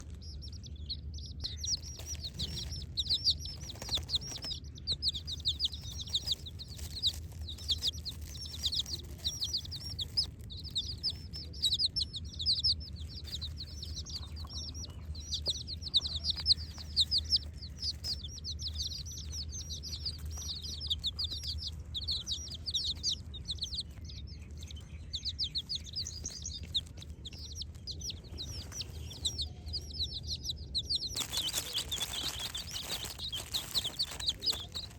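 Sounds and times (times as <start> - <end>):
chicks peeping: 0.0 - 34.9
low steady hum: 0.0 - 34.9.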